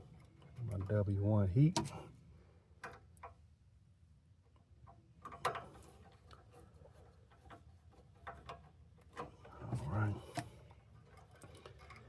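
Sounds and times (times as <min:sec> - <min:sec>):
faint clicks and taps: 0:02.8 - 0:03.5, 0:04.4 - 0:12.0.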